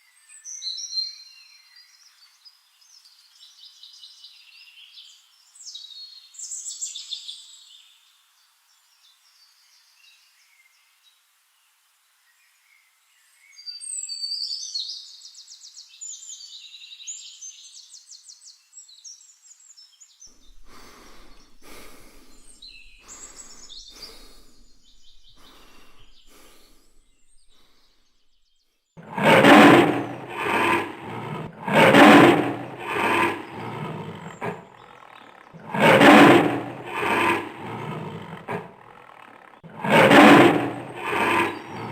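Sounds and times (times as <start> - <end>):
birds chirping: 20.4 - 28.0, 29.0 - 41.9
lion calling and roaring: 29.0 - 41.9.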